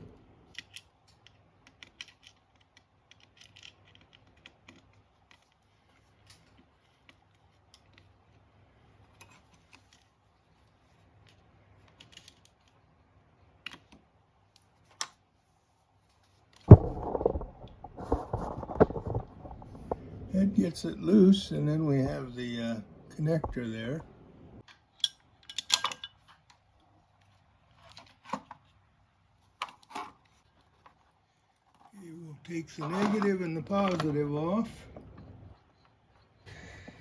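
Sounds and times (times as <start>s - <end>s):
faint clicks and taps: 16.6s - 20.2s
loud rough clattering scrape: 16.7s - 20.1s.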